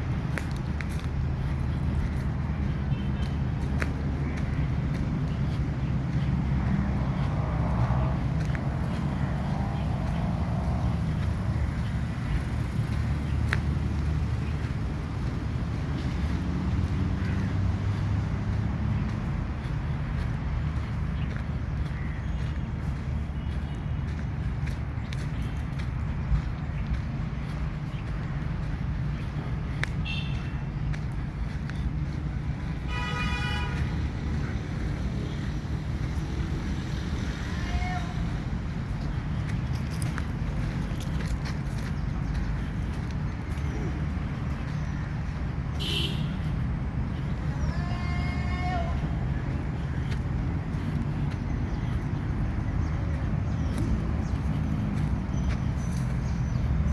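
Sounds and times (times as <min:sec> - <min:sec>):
low outdoor rumble: 0:00.0 - 0:56.9
vehicle horn: 0:30.0 - 0:30.6, 0:32.8 - 0:34.0, 0:45.8 - 0:46.5.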